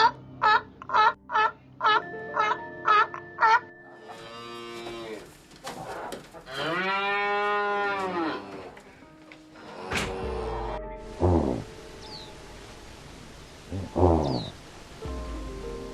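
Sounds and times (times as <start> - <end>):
cow mooing: 4.0 - 5.3, 6.5 - 8.8, 9.6 - 11.4.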